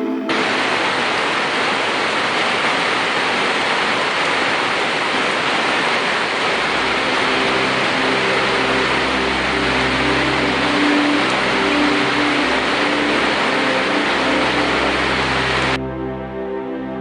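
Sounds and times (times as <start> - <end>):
rushing water: 0.0 - 15.8
low hum: 6.6 - 16.7
steady tones: 6.7 - 15.8.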